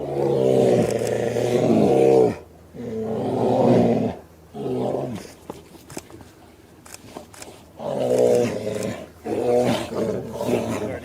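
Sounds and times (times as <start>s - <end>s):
bears roaring: 0.0s - 5.4s, 7.8s - 11.0s.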